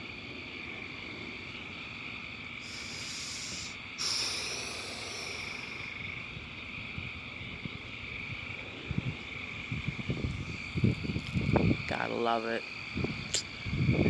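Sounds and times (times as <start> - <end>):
frogs calling: 0.0 - 14.0
rushing hiss: 2.5 - 6.3, 13.2 - 13.6.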